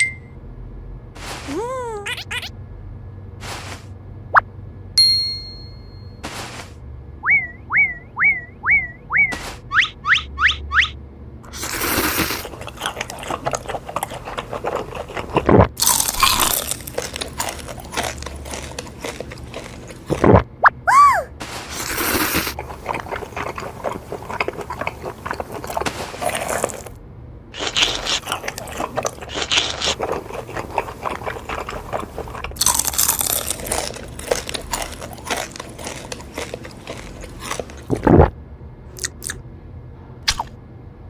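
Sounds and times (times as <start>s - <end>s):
crunchy bacon chewing: 11.5s - 20.5s, 21.5s - 27.0s, 27.6s - 38.3s, 38.9s - 39.4s.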